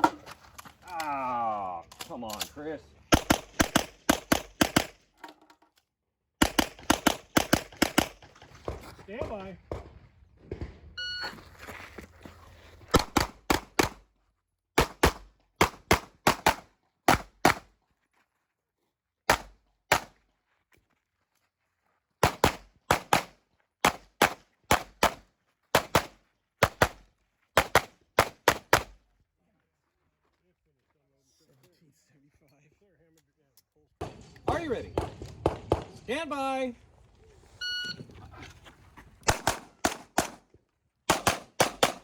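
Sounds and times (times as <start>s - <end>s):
pistol firing: 3.1s - 5.0s, 6.4s - 8.2s, 39.2s - 40.4s, 41.1s - 42.0s.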